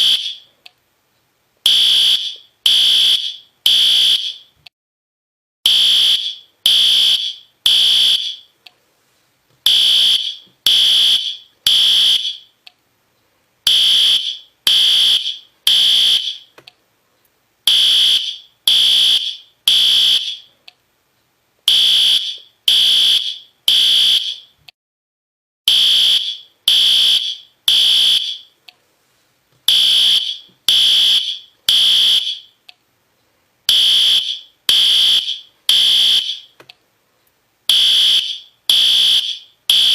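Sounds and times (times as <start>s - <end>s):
fire alarm horn blasts: 0.0s - 0.5s, 1.7s - 4.5s, 5.7s - 8.5s, 9.7s - 12.5s, 13.7s - 16.5s, 17.7s - 20.5s, 21.7s - 24.5s, 25.7s - 28.5s, 29.7s - 32.6s, 33.7s - 36.5s, 37.7s - 39.9s.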